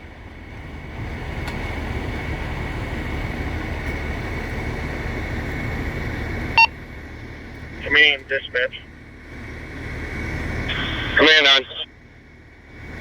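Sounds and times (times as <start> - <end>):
vehicle engine running: 0.0 - 13.0
high-pitched whine: 10.6 - 11.9.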